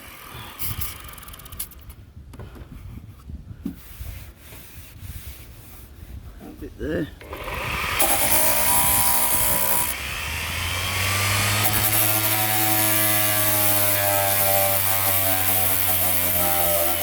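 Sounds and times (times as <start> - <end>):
power sander on metal: 7.2 - 17.0.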